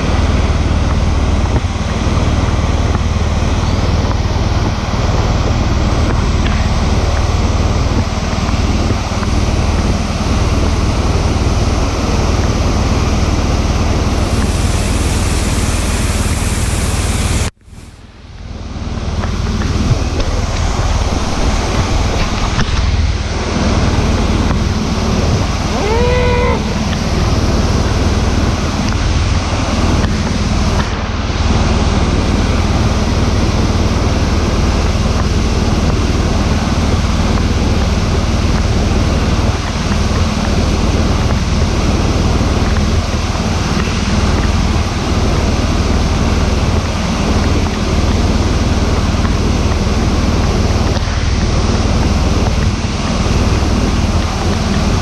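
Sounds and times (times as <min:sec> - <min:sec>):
wind rush and road noise: 0:00.0 - 0:55.0.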